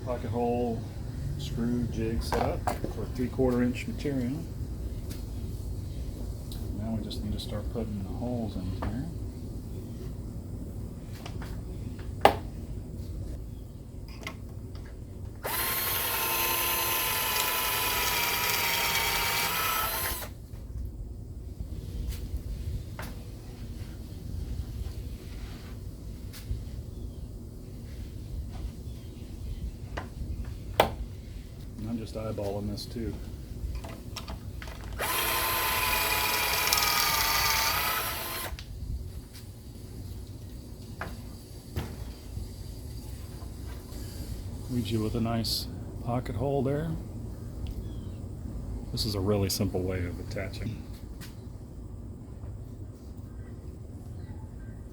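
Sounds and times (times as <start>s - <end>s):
power drill boring into wood: 15.4s - 20.4s, 34.9s - 38.6s.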